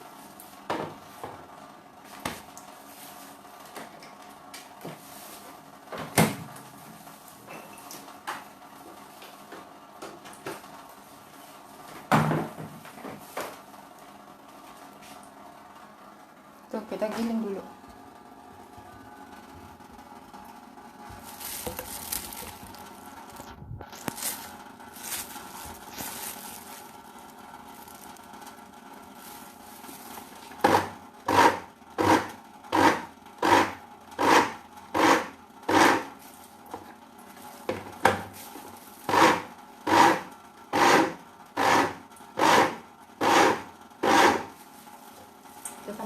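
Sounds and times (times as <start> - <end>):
rhythmic grinding strokes: 39.1 - 44.5.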